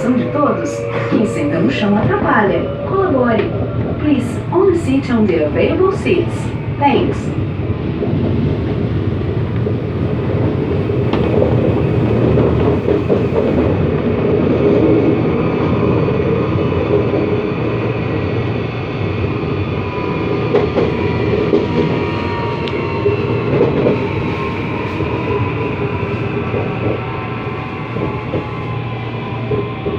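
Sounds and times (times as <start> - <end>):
traction motors growling: 0.0 - 6.2
faint whining tones: 0.0 - 7.3
wheels rumbling on rail: 0.0 - 29.9.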